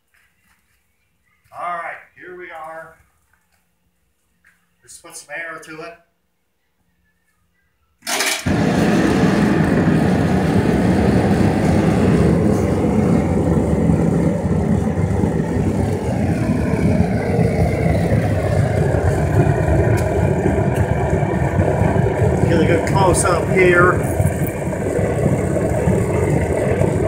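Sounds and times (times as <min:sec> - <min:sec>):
air blower rushing: 0:08.1 - 0:27.0.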